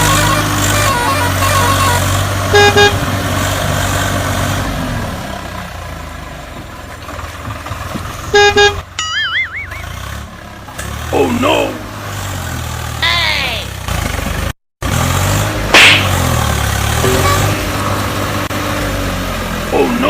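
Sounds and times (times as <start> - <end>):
truck horn honks: 0.0 - 3.1, 8.2 - 10.0, 16.9 - 18.2
truck engine running: 0.0 - 20.0
wobbling whistle-like tone: 9.0 - 10.0.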